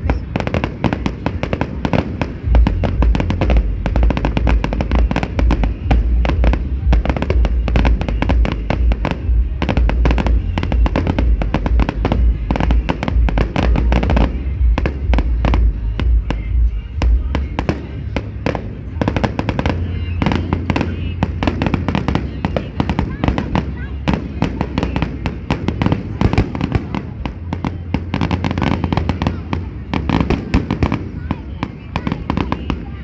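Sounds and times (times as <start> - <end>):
low rumble: 0.0 - 22.3
fireworks crackles and bangs: 0.0 - 33.0
music: 0.0 - 33.0.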